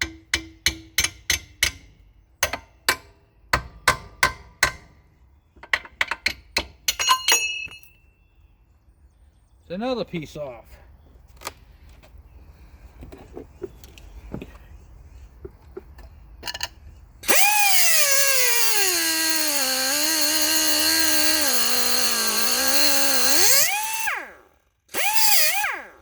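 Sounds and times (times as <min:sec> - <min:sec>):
light metal clinks and taps: 0:06.9 - 0:08.1
power grinder on steel: 0:17.2 - 0:26.0.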